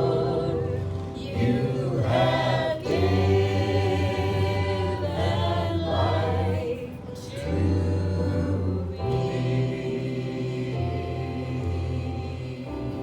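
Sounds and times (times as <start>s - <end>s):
group singing a hymn: 0.0s - 13.0s
sustained low bass line: 0.0s - 13.0s.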